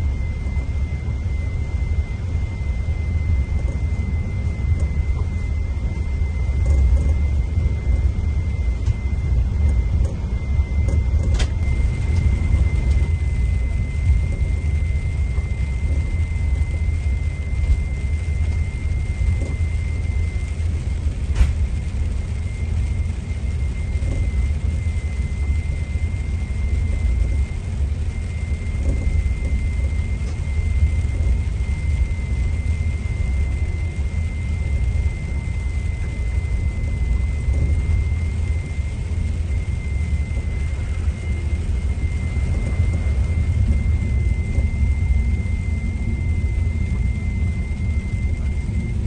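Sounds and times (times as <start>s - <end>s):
high whine: 0.0s - 49.0s
diesel coach engine rumbling: 3.4s - 49.0s
coach engine rumbling: 36.8s - 49.0s.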